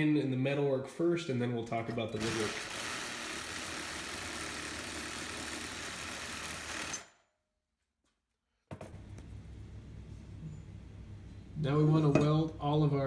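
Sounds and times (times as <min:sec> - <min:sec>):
arc welding crackle: 0:02.2 - 0:07.1.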